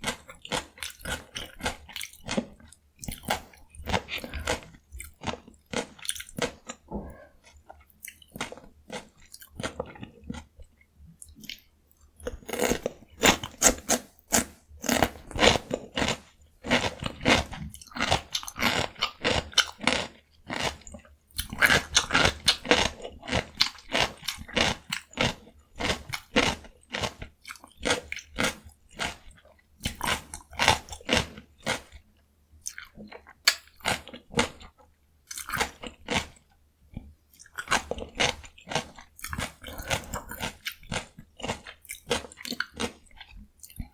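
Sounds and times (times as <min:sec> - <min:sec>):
crunchy chewing of cucumber: 0:00.0 - 0:43.9.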